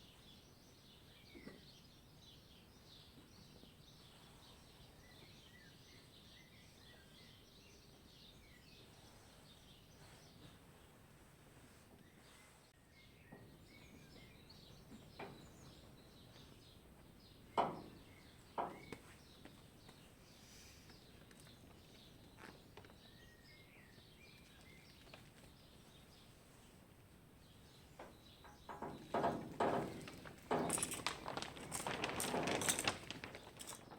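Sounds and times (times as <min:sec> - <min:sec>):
faint birdsong: 0:00.0 - 0:33.9
sharp knocks: 0:28.0 - 0:31.0.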